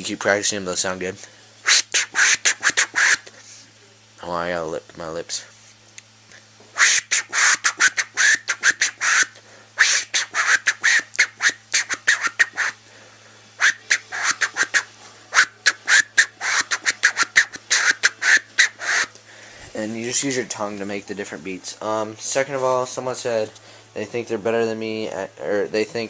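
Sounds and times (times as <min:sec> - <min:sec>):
beatboxed record-scratch chirps: 0:01.7 - 0:03.3, 0:06.7 - 0:12.8, 0:13.6 - 0:19.1.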